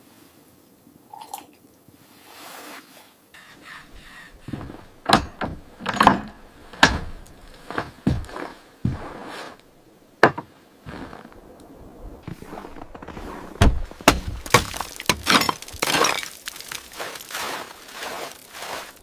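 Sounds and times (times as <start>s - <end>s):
crunching scraping strokes: 2.3s - 19.0s
sharp knocks and cracks: 3.6s - 9.1s, 10.2s - 10.5s, 12.8s - 17.4s.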